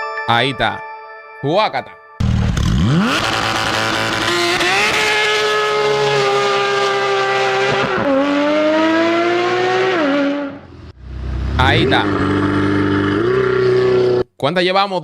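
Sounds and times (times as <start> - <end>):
sports car engine accelerating: 2.2 - 14.1.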